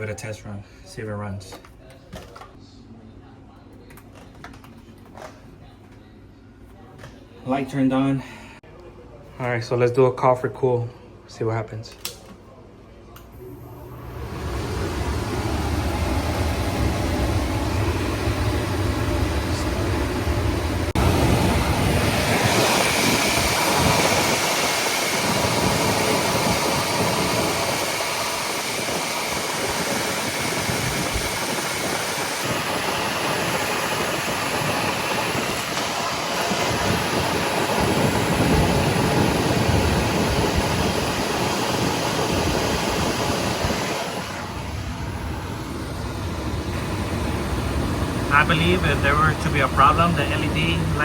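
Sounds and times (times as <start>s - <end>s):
air conditioner blower rushing air: 13.3s - 51.0s.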